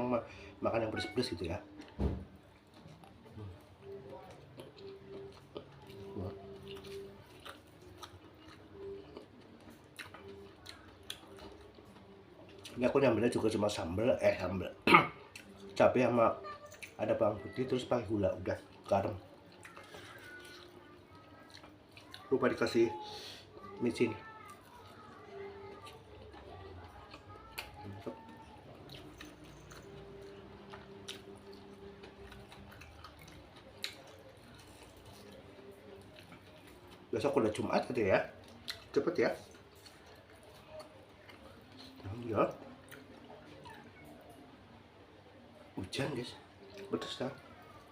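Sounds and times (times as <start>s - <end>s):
person chewing food: 1.7s - 12.8s, 18.4s - 22.7s, 24.3s - 37.4s, 38.3s - 44.3s.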